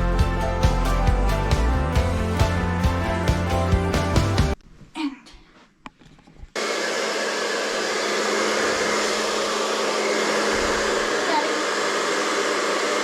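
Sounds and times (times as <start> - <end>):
hairdryer running: 6.6 - 13.0.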